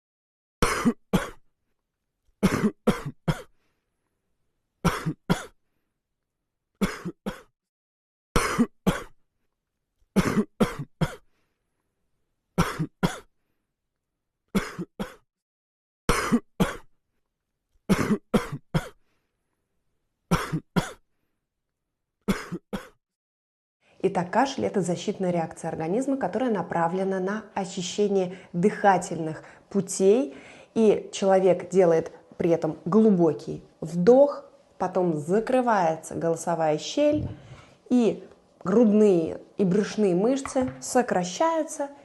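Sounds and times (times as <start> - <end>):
child's dry cough: 0.6 - 1.4, 2.4 - 3.5, 8.4 - 9.2, 10.2 - 11.2, 16.1 - 16.9, 17.9 - 19.0, 20.3 - 21.0, 22.3 - 23.0.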